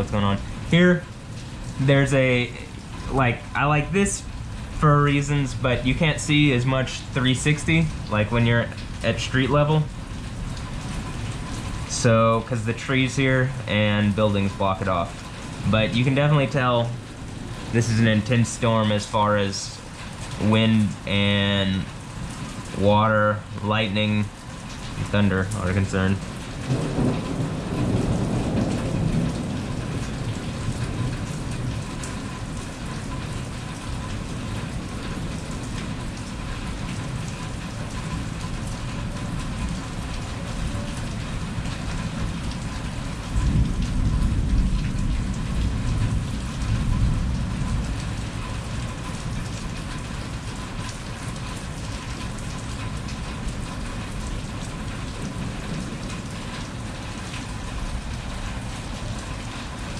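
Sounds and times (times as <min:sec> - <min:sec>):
rain pouring: 0:00.0 - 0:59.9
low rumble of thunder: 0:26.2 - 0:59.9.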